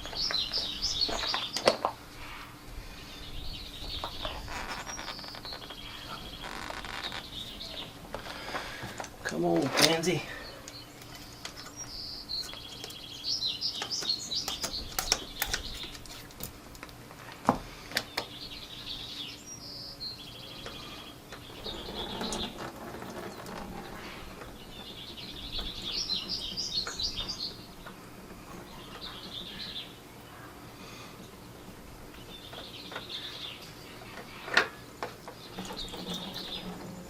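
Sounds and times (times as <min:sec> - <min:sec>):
birds twittering: 0:00.0 - 0:37.0
sharp clicks and knocks: 0:13.8 - 0:18.3.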